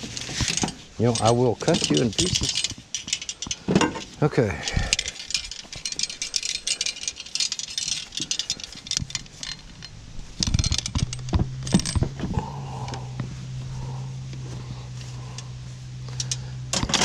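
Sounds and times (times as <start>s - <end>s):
scrap metal clattering: 0.0s - 4.2s
steady low hum: 0.0s - 17.0s.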